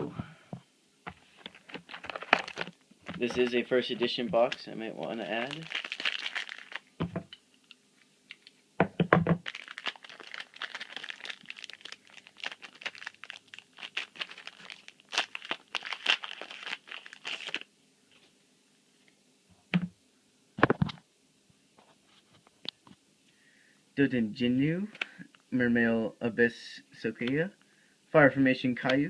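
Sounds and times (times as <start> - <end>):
foil wrapper crinkling and tearing: 1.4 - 6.9, 9.4 - 17.7.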